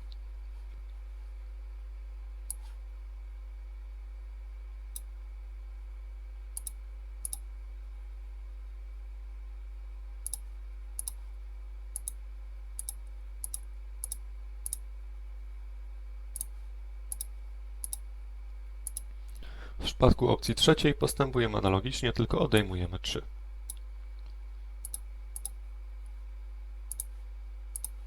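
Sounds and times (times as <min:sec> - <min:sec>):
low electrical hum: 0:00.0 - 0:28.0
mouse buttons clicking: 0:27.8 - 0:28.0.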